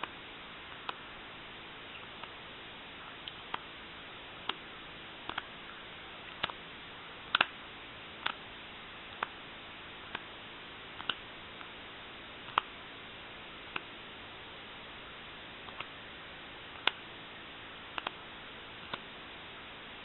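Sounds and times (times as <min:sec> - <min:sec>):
steady hiss: 0:00.0 - 0:20.0.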